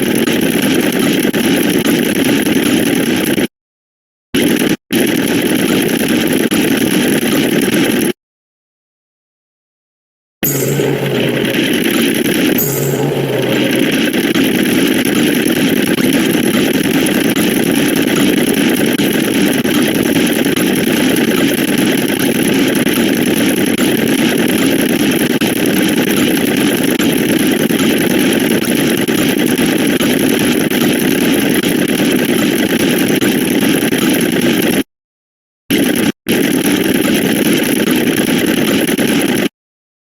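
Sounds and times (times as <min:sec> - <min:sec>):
buzzing electronic drone: 0:10.4 - 0:20.0.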